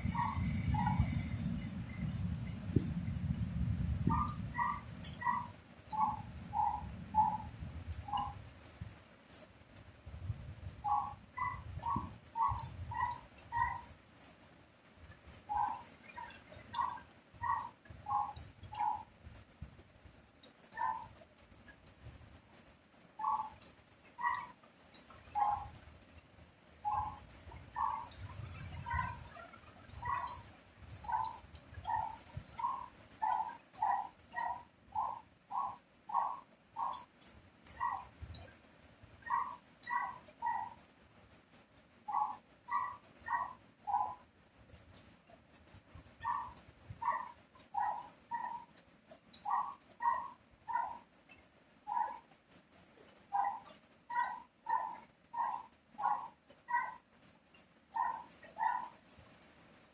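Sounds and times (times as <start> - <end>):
rain and wind hiss: 0.0 - 59.9
dog barking: 4.1 - 6.2, 10.9 - 13.9, 16.7 - 19.0, 20.8 - 21.1, 24.2 - 24.5, 27.8 - 28.1, 28.8 - 37.1, 37.8 - 38.1, 39.2 - 40.8, 42.1 - 44.2, 46.2 - 48.7, 49.4 - 51.0, 51.9 - 52.3, 53.3 - 57.0, 58.0 - 59.0.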